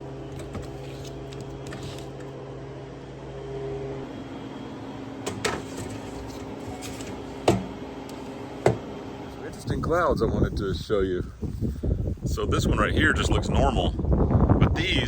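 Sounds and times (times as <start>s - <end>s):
appliance motor humming: 0.0s - 9.6s.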